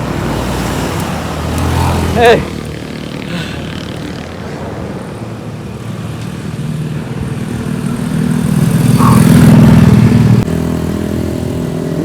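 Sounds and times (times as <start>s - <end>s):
vehicle engine running: 6.9s - 12.0s.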